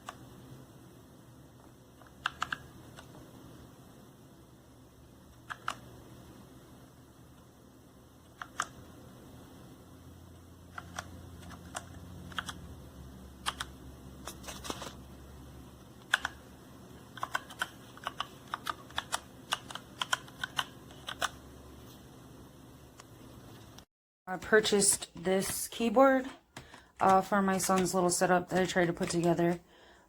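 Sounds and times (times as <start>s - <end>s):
mechanical keyboard clicks: 2.0s - 3.1s, 5.4s - 5.9s, 8.3s - 8.8s, 10.7s - 12.6s, 13.4s - 13.8s, 16.0s - 16.4s, 17.2s - 21.4s.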